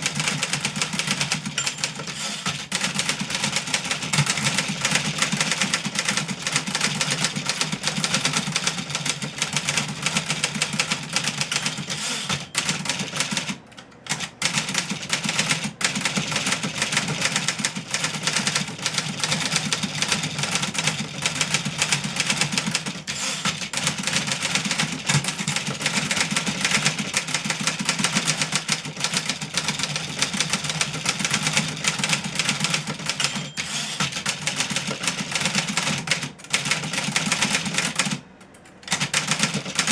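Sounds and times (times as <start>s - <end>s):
typewriter typing quickly: 0.0s - 38.2s, 38.8s - 39.9s.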